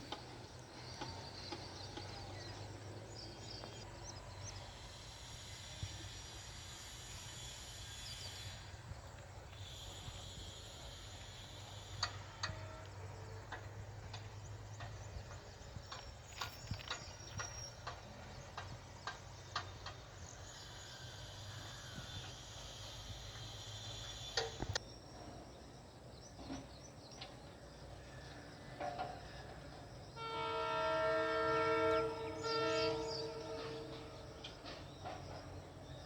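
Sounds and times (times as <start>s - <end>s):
locomotive horn chord: 12.3s - 13.3s, 30.2s - 34.8s.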